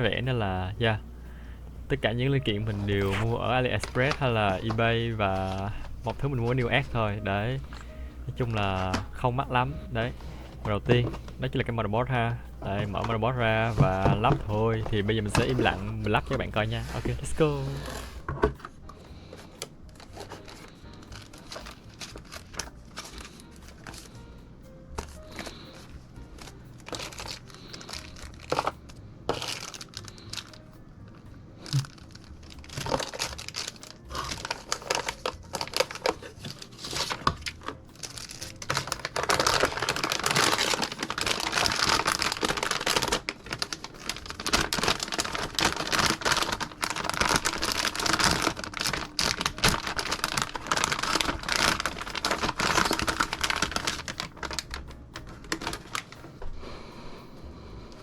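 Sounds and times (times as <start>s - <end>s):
plastic packaging crinkling: 0.0s - 56.8s.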